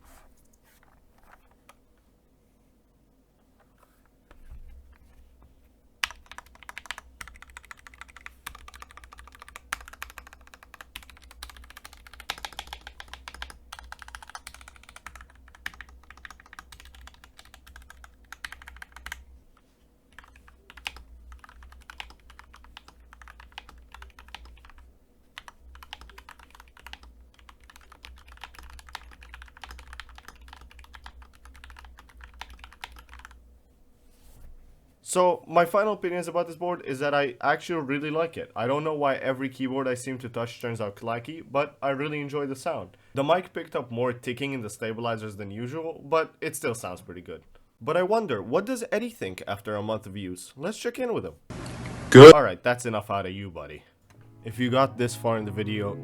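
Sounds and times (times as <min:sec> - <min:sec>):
fast mechanical keyboard typing: 0:06.0 - 0:19.2, 0:20.2 - 0:33.4.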